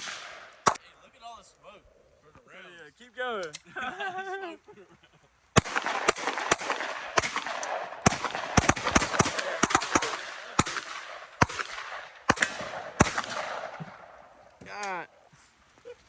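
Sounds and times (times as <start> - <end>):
gunshots with ringing echo: 0.0 - 0.8, 5.6 - 14.4.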